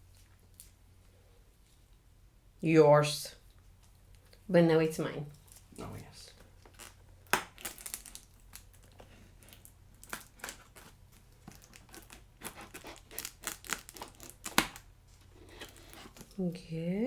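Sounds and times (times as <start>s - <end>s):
cardboard packaging rustling: 5.5s - 16.4s.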